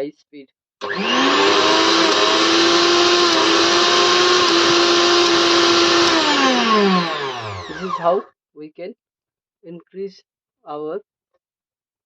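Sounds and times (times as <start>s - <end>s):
mixer grinder motor whine: 0.8s - 8.2s.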